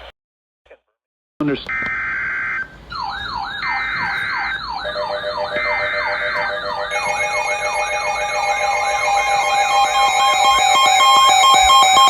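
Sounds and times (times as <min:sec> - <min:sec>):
digital header tones: 0:01.7 - 0:12.0
wailing siren tone: 0:01.7 - 0:12.0
steady alert tones: 0:02.4 - 0:12.0.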